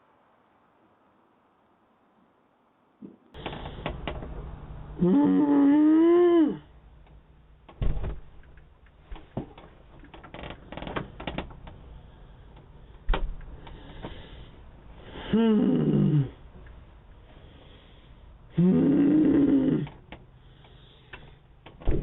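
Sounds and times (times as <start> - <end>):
sharp clicks and knocks: 7.0 - 11.8.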